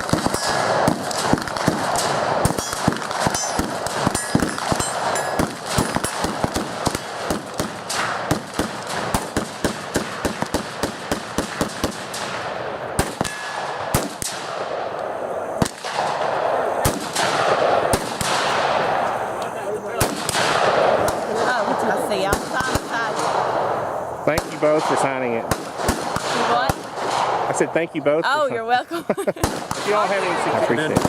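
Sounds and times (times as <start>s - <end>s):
gunshots from several firearms: 0.0s - 14.9s, 15.6s - 19.2s, 19.9s - 27.7s, 29.4s - 31.0s
voices murmuring: 14.7s - 31.0s.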